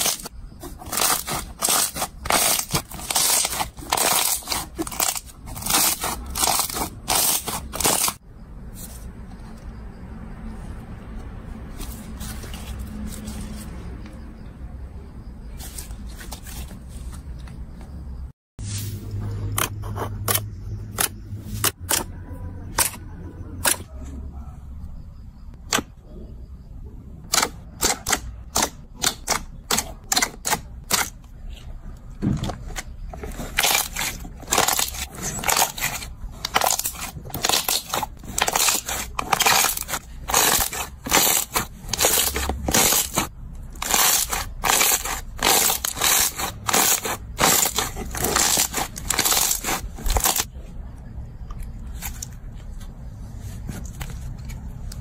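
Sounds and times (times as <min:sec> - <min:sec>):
slime crackling and popping: 0:33.6 - 0:43.2, 0:43.8 - 0:50.5.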